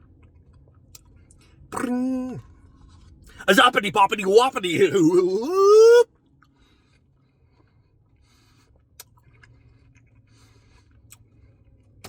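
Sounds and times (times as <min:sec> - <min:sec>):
man eating: 0:01.8 - 0:06.0.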